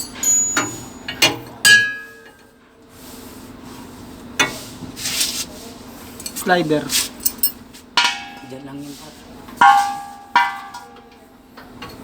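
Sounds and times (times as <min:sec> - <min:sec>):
metal tools clinking: 0:00.0 - 0:02.0, 0:06.2 - 0:08.6
loud ringing metal clang: 0:00.0 - 0:02.3, 0:07.2 - 0:08.6, 0:09.6 - 0:11.1.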